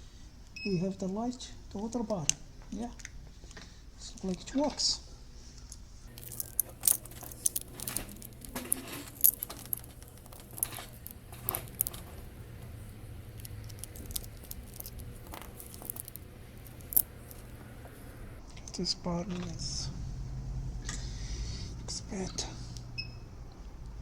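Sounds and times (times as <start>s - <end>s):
steady low hum: 5.8s - 18.4s
plastic clicks and rattles: 6.1s - 18.0s.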